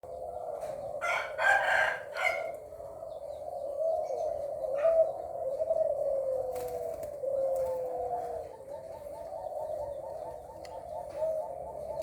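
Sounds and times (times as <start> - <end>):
rooster crowing: 1.0 - 2.6.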